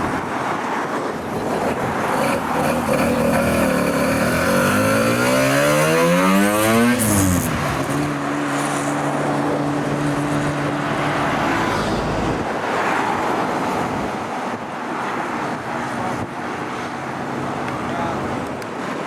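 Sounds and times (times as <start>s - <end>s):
road and traffic noise: 0.0s - 19.0s
car engine running: 1.2s - 8.2s.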